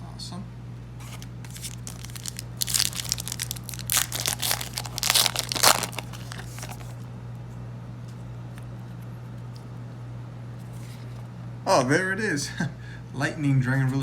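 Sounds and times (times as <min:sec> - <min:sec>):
foil wrapper crinkling and tearing: 0:01.0 - 0:07.0.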